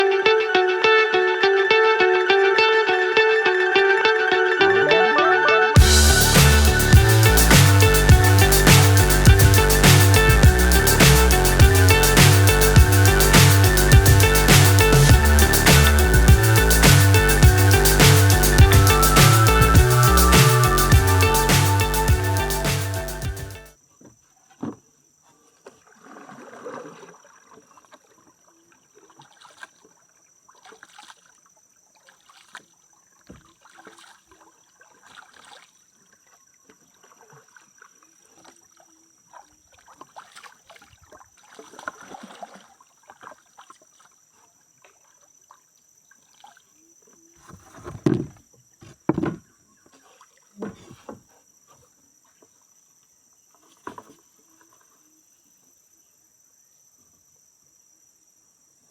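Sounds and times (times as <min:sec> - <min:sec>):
high-pitched insect drone: 0:04.6 - 0:23.7
paddle swishing in water: 0:25.6 - 0:28.3, 0:29.0 - 0:31.4, 0:32.0 - 0:35.8, 0:36.6 - 0:44.2.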